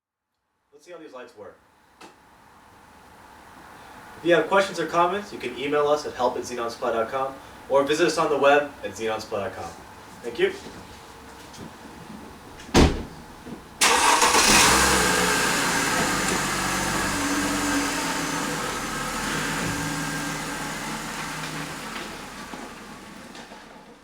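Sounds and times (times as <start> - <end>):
car engine starting and idling: 13.8 - 24.0.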